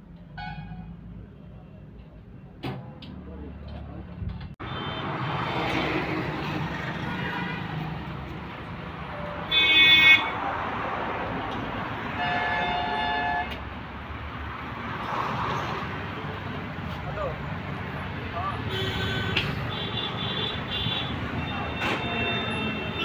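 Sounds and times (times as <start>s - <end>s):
street traffic noise: 0.0s - 23.0s
vehicle horn honks: 4.6s - 5.1s, 12.2s - 13.6s.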